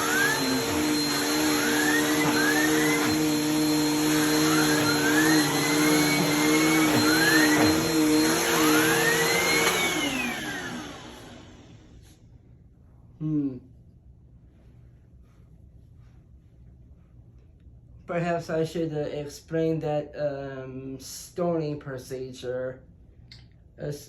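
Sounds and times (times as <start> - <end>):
vacuum motor winding down: 0.0 - 11.9
vacuum cleaner motor running: 0.0 - 12.0.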